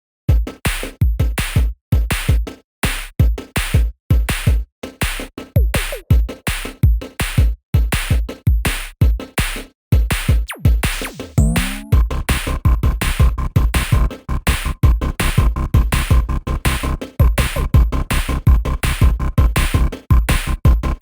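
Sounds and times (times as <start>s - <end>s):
stuttering electronic beat: 0.3s - 21.0s.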